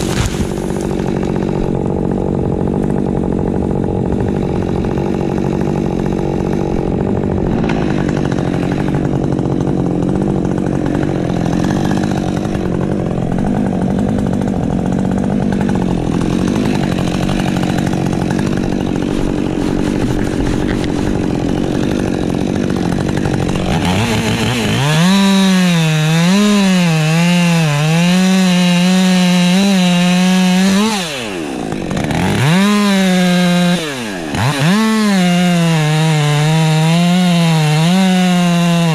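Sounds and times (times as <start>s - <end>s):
chainsaw cutting wood: 0.0s - 38.9s
chainsaw revving: 0.0s - 38.9s.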